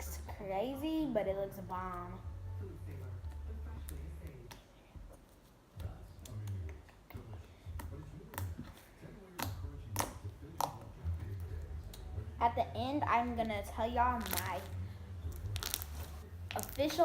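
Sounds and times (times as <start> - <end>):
soft hand handling noise: 14.2 - 17.0.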